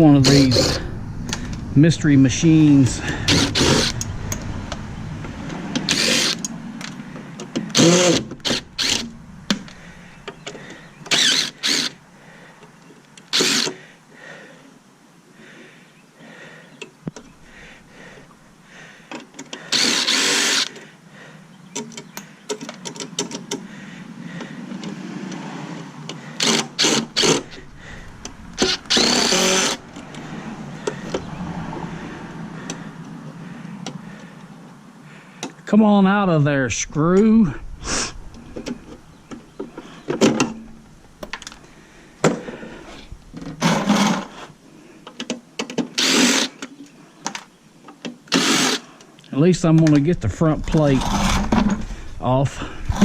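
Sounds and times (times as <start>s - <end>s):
power drill running: 3.0s - 4.1s, 5.9s - 6.5s, 7.7s - 9.1s, 10.6s - 12.0s, 13.3s - 13.8s, 19.7s - 20.8s, 26.4s - 29.9s, 46.0s - 46.6s, 48.3s - 48.9s
clicks and handling noises: 21.7s - 23.7s, 45.0s - 48.3s.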